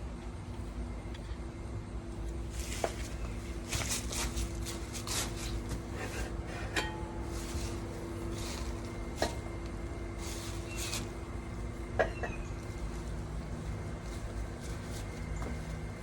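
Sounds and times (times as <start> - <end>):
steady low hum: 0.0 - 16.0
rustling: 2.5 - 6.2.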